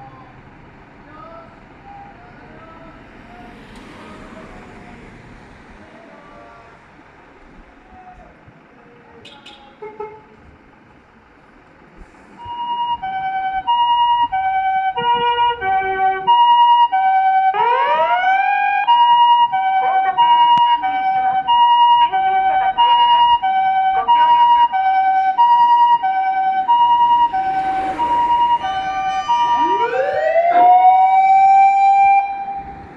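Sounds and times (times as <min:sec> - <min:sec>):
wailing siren: 0:02.0 - 0:05.6, 0:12.4 - 0:32.9
two-tone hi-lo siren: 0:12.4 - 0:32.9.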